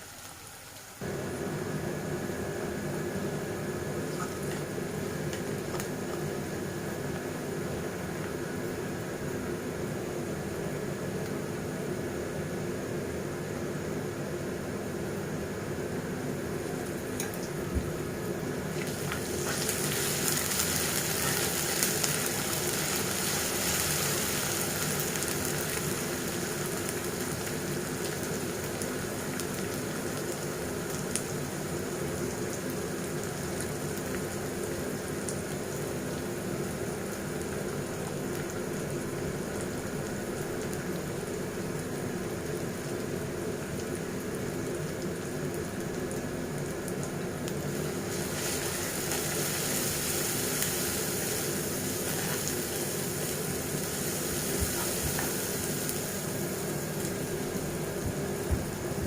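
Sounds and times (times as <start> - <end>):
food sizzling in a pan: 16.2 - 59.0.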